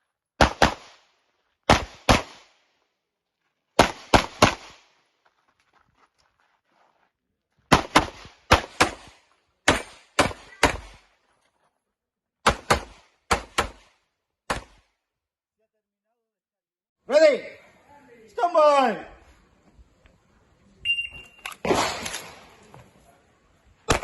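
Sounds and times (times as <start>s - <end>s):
pistol shots: 0.4s - 2.6s, 3.8s - 4.9s, 7.7s - 11.0s, 12.4s - 14.8s, 21.5s - 22.6s.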